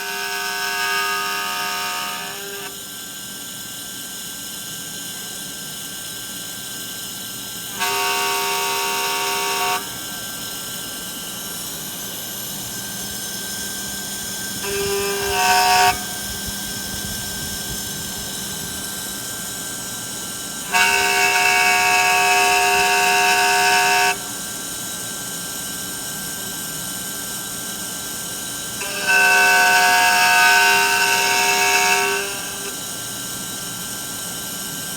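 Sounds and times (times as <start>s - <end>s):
stepper motors whining: 0.0s - 2.8s, 7.6s - 24.6s, 28.6s - 33.5s
quiet steady machine noise: 0.0s - 34.9s.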